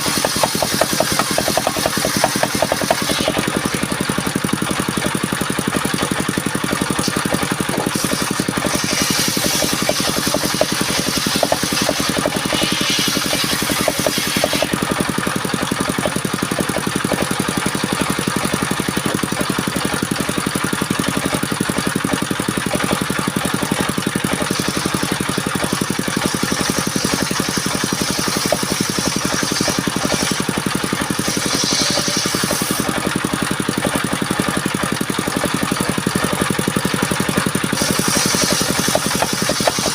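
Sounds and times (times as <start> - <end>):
saw blade cutting wood hiss: 0.0 - 4.3, 6.8 - 18.7, 23.9 - 33.4, 37.7 - 39.9
circular saw engine running: 0.0 - 39.9.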